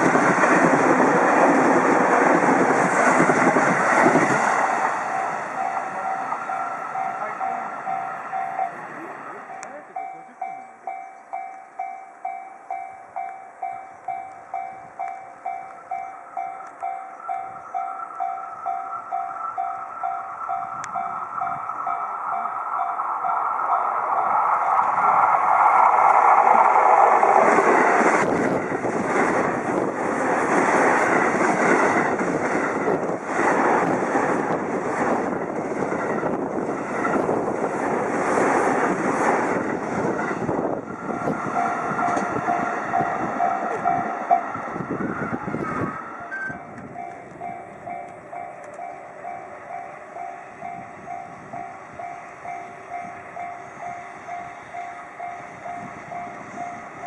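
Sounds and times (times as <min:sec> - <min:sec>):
level-crossing warning bell: 0:03.0 - 0:26.8, 0:39.3 - 0:57.0
train wheels clattering: 0:13.2 - 0:44.6.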